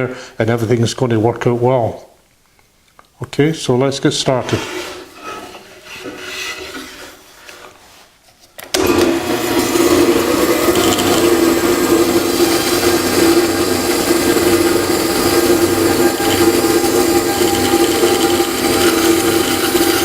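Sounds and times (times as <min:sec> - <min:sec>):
bandsaw humming: 0:08.8 - 0:20.0.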